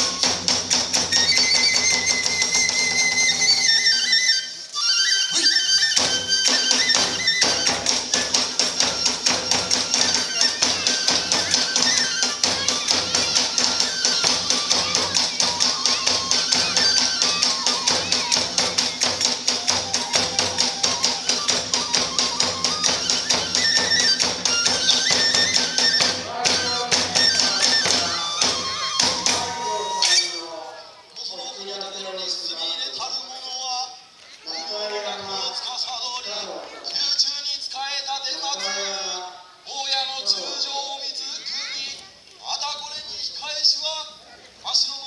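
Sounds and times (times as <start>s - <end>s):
hand cymbals: 0.0s - 30.4s
drums beating: 0.0s - 30.9s
high bamboo flute melody: 0.0s - 31.0s.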